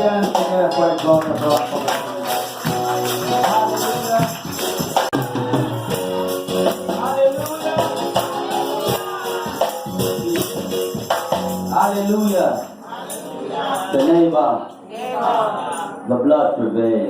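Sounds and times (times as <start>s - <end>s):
keyboard or organ chords: 0.0s - 12.8s
tambourine beat: 0.0s - 14.1s
person singing: 5.2s - 10.8s.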